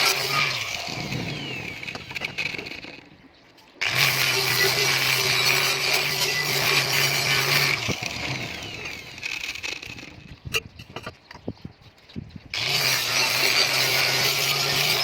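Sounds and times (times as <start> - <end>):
electric power tool humming: 0.0 - 3.0, 3.8 - 10.3, 12.6 - 15.0.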